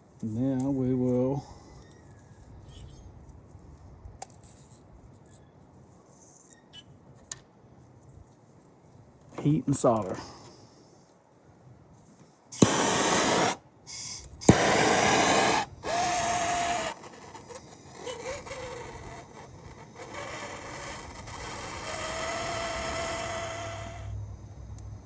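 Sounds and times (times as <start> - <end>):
gas torch hissing: 12.5 - 25.0
torch igniter click: 12.6 - 23.1.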